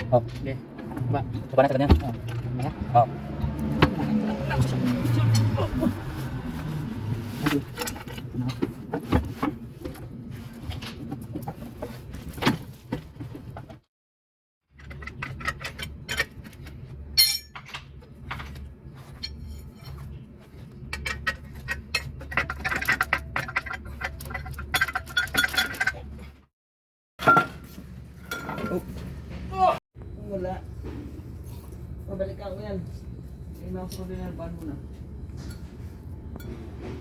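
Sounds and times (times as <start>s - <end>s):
metal tools clinking: 17.2s - 17.8s, 21.0s - 26.0s.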